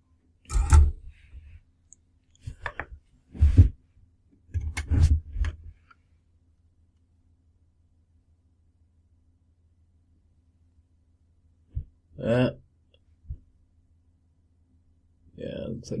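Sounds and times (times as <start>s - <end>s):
faint steady hum: 0.0s - 16.0s
small parts clicking and bumping: 0.5s - 1.1s.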